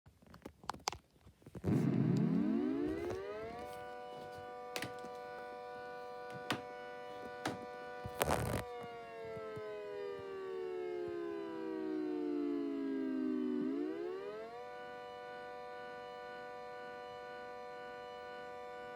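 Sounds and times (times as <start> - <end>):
air raid siren: 1.6 - 18.9.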